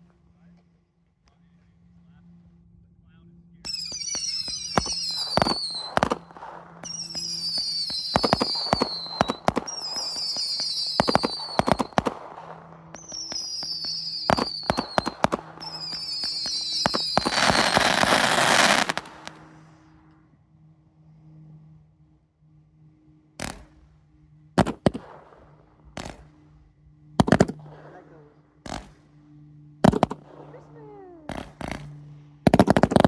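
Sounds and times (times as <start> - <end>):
whistling firework shots: 3.6 - 19.9, 23.4 - 23.8, 24.6 - 26.5, 27.2 - 29.2, 29.8 - 33.0
firework bangs and pops: 3.7 - 19.5, 23.4 - 23.8, 24.6 - 26.3, 27.2 - 27.8, 28.6 - 29.1, 29.8 - 30.6, 31.3 - 33.0
firework crackling hiss: 3.7 - 19.7.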